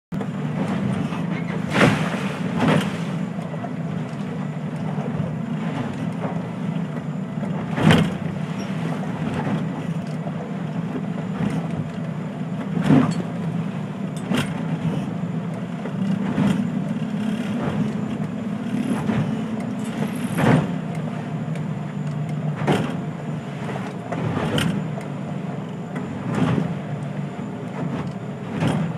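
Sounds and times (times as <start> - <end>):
motorboat engine running: 0.2 - 28.9.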